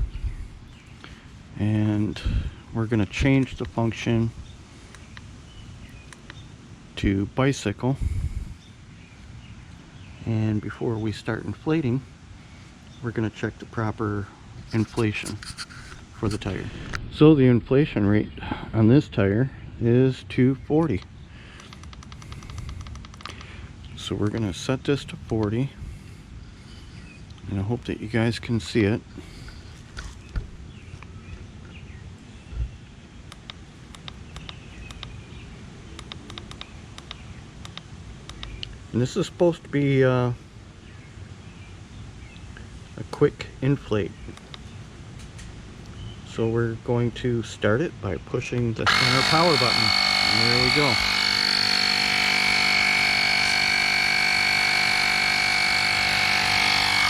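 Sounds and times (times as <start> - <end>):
birds chirping faintly: 0.0 - 55.3
air compressor whining: 48.8 - 57.0.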